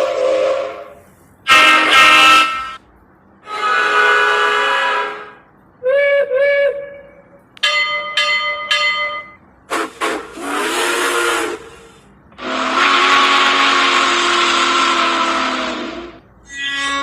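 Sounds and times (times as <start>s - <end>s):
train whistle blowing: 0.0s - 2.8s, 3.4s - 7.4s, 9.7s - 17.0s
steam hiss: 9.7s - 16.3s.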